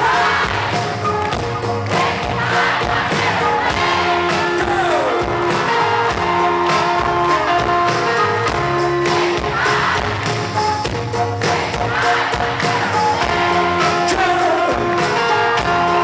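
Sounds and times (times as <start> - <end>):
held instrumental notes: 0.0 - 16.0
steady drum beat: 0.0 - 16.0.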